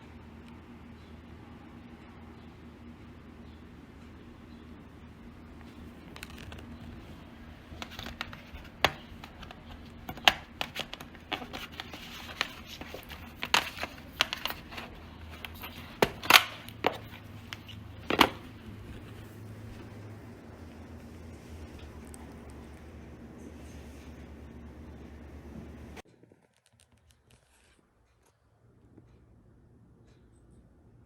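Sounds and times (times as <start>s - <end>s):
plastic or paper crinkling: 5.7s - 20.1s
packaging clicking and snapping: 7.7s - 18.6s.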